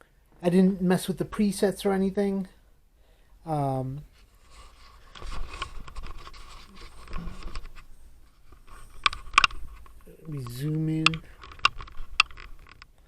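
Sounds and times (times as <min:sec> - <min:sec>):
camera handling rustling: 0:04.1 - 0:13.0
sharp clicks: 0:08.9 - 0:13.0.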